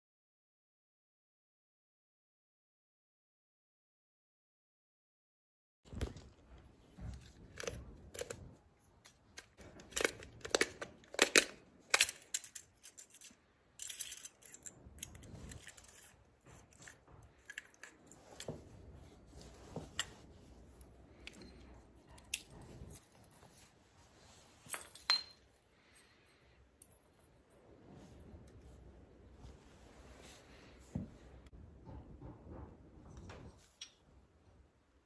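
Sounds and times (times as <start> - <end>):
tools clicking and clattering: 7.0 - 18.7.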